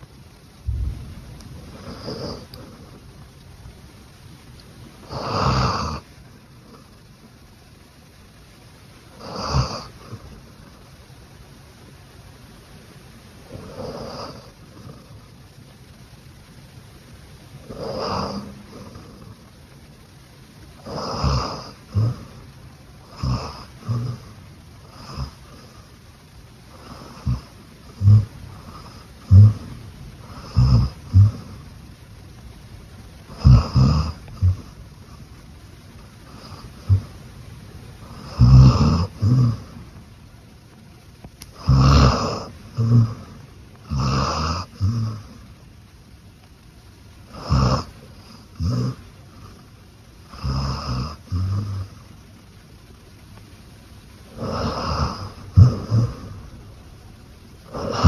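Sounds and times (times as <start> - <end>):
dog snoring: 1.6 - 3.1, 5.0 - 7.0, 9.1 - 10.8, 13.4 - 15.3, 17.6 - 19.5, 20.8 - 22.4, 23.0 - 26.0, 26.7 - 31.7, 33.3 - 35.4, 36.1 - 37.2, 38.0 - 39.8, 41.5 - 45.4, 47.2 - 52.1, 54.3 - 56.5, 57.6 - 58.0.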